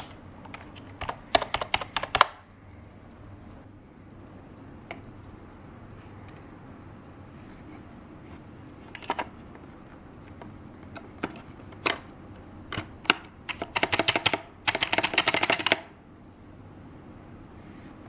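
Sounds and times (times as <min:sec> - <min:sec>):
keyboard typing: 0:00.0 - 0:02.5, 0:12.7 - 0:15.9.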